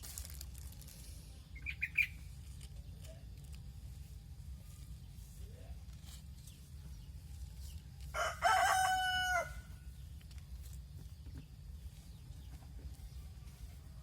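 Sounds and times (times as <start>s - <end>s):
rooster crowing: 8.1s - 9.8s.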